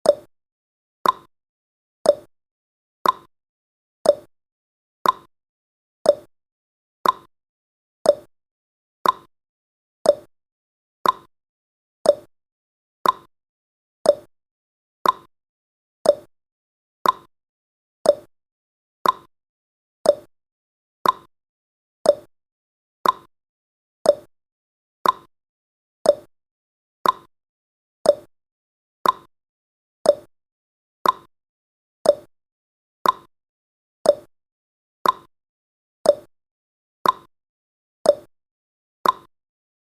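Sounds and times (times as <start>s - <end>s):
clock ticking: 1.0s - 1.3s, 3.0s - 3.3s, 5.0s - 5.3s, 7.0s - 7.3s, 9.0s - 9.3s, 11.0s - 11.3s, 13.0s - 13.3s, 14.1s - 14.3s, 15.0s - 15.3s, 16.1s - 16.3s, 17.0s - 17.3s, 18.1s - 18.3s, 19.0s - 19.3s, 20.1s - 20.3s, 21.0s - 21.3s, 22.1s - 22.3s, 23.0s - 23.3s, 24.1s - 24.3s, 25.0s - 25.3s, 26.1s - 26.3s, 27.0s - 27.3s, 28.1s - 28.3s, 29.0s - 29.3s, 30.1s - 30.3s, 31.0s - 31.3s, 32.1s - 32.3s, 33.0s - 33.3s, 34.1s - 34.3s, 35.0s - 35.3s, 36.1s - 36.3s, 37.0s - 37.3s, 38.1s - 38.3s, 39.0s - 39.3s.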